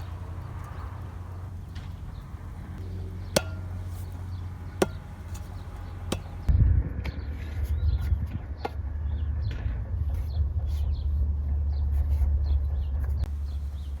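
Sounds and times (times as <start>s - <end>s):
sharp ringing knocks: 3.1s - 6.5s.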